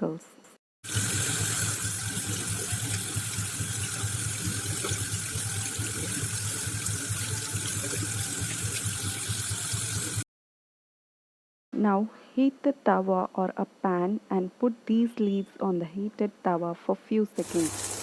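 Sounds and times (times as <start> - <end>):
tap water running into sink: 0.9 - 10.2, 17.4 - 18.0.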